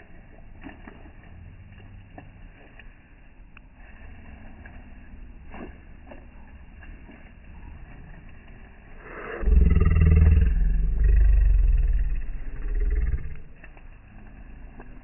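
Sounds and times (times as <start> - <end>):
vehicle engine rumble: 0.0 - 15.0.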